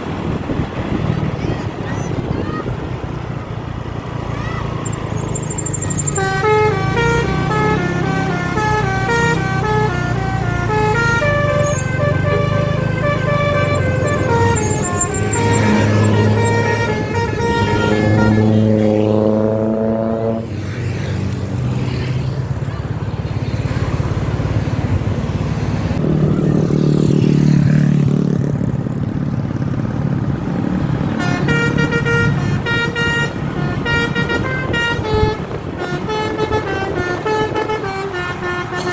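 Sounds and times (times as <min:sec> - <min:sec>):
bus engine running low: 0:00.0 - 0:20.4, 0:21.5 - 0:27.1, 0:27.9 - 0:38.9
bus horn musical notes: 0:04.8 - 0:20.6, 0:31.0 - 0:38.9.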